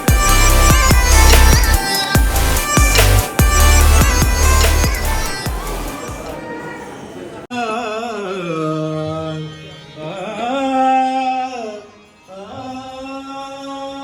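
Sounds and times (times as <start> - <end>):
person singing devotional song: 0.0 - 6.0.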